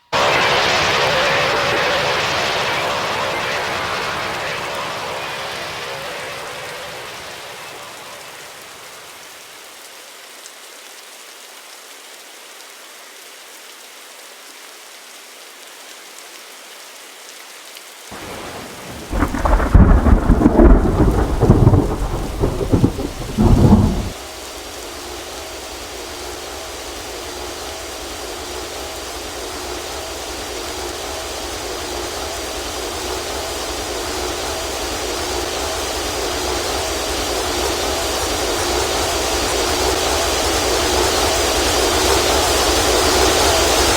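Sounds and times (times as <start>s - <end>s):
aircraft engine humming: 0.2s - 9.0s, 18.2s - 24.1s
loud rough rumble: 18.2s - 24.2s.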